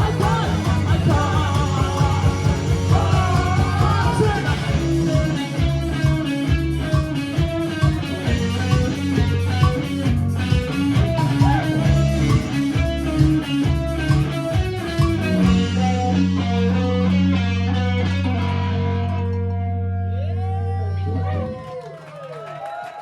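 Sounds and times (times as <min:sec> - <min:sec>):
person singing: 0:00.0 - 0:05.8
rock band playing: 0:00.0 - 0:19.9.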